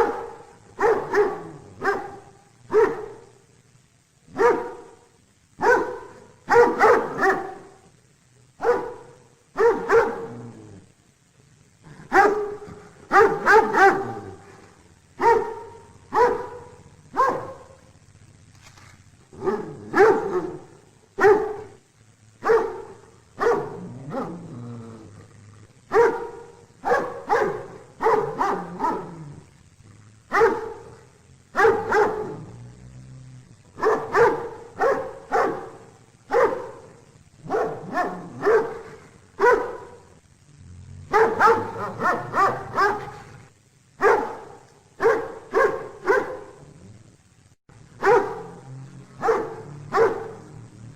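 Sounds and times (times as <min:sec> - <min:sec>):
dog barking: 0:00.0 - 0:03.4, 0:04.3 - 0:07.8, 0:08.6 - 0:10.5, 0:11.9 - 0:14.6, 0:15.2 - 0:17.9, 0:19.4 - 0:21.8, 0:22.4 - 0:24.4, 0:25.9 - 0:29.5, 0:30.3 - 0:32.5, 0:33.8 - 0:40.1, 0:41.1 - 0:43.4, 0:44.0 - 0:46.7, 0:48.0 - 0:50.6.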